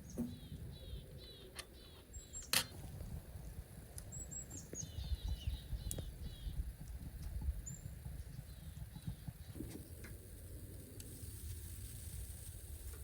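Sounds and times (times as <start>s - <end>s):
small birds chirping: 0.0s - 2.8s, 3.8s - 11.2s
low irregular rumble: 0.3s - 13.0s.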